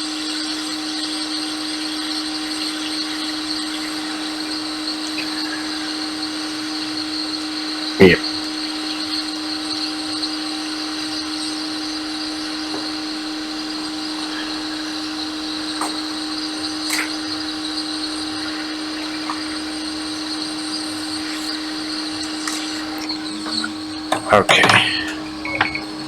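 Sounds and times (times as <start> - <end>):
hot-air gun blowing: 12.0 - 25.5.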